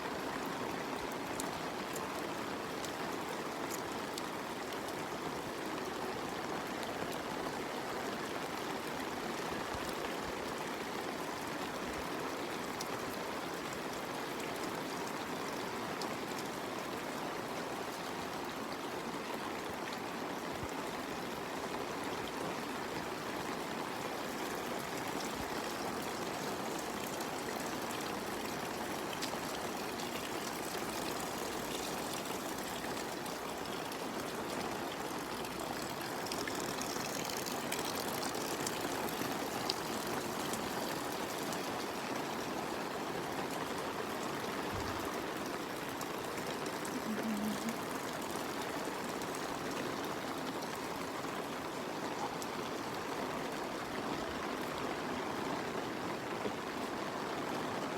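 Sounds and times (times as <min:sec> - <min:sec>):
steady rain: 0:00.0 - 0:57.9
water running: 0:24.2 - 0:42.0.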